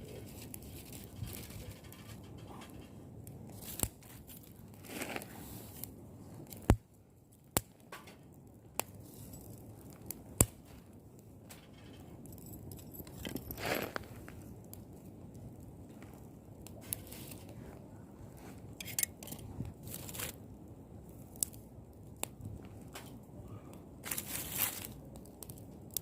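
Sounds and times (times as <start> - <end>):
rustling and crinkling material: 0.0 - 6.8, 12.8 - 20.5, 24.0 - 25.2.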